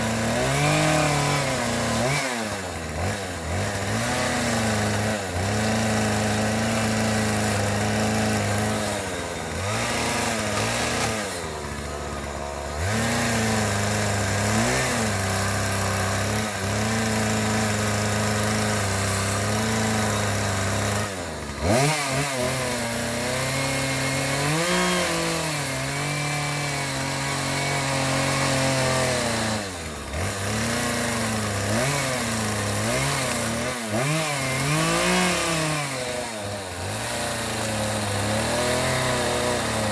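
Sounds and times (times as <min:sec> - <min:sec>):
small petrol engine running: 0:01.5 - 0:25.1.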